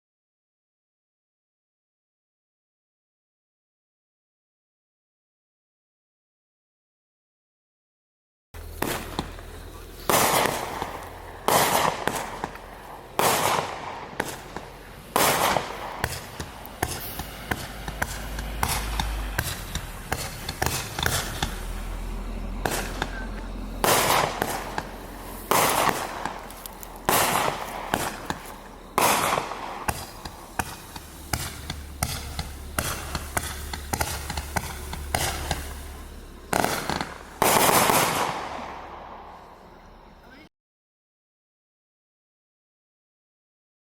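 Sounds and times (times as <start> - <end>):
firework pops and crackling: 8.6 - 39.4
firework launch bangs: 8.6 - 39.7.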